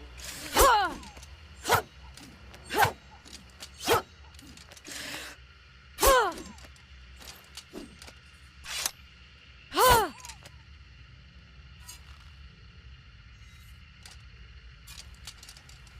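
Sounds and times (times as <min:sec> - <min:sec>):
sword swishes and strikes: 0:00.2 - 0:01.9, 0:02.6 - 0:04.6.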